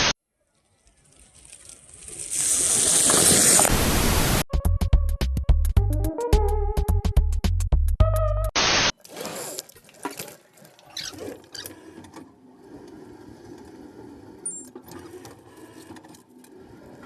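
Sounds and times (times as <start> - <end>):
rising noise rush: 3.4 - 4.5.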